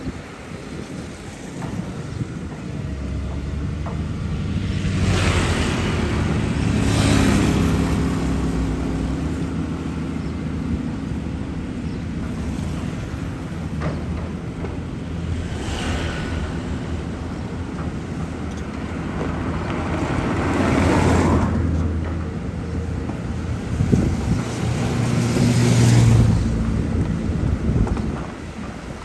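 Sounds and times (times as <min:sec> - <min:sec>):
loud rushing noise: 0:04.1 - 0:21.8.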